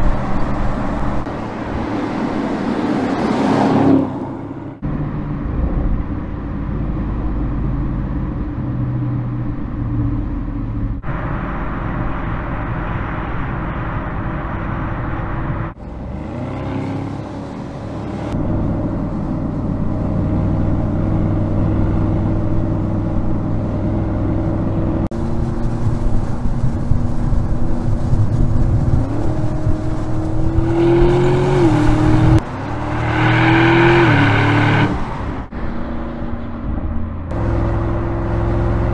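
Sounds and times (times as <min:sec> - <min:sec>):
car engine running: 0:04.2 - 0:32.9.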